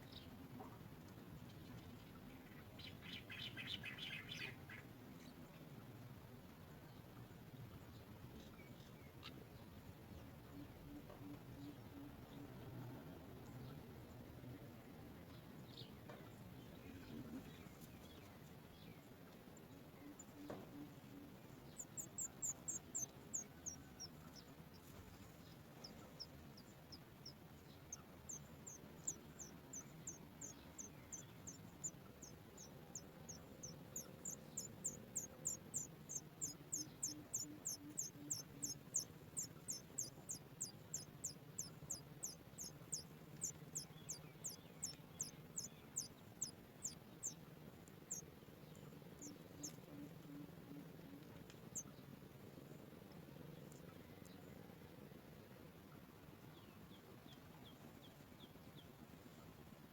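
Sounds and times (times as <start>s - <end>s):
nestlings chirping high-pitched: 20.1s - 51.9s.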